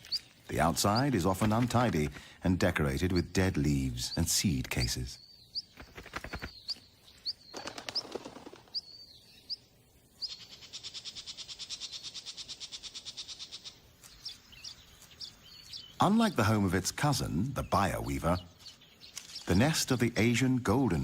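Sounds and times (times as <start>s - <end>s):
songbird chirping: 0.0s - 21.0s
bird trilling: 4.1s - 16.4s.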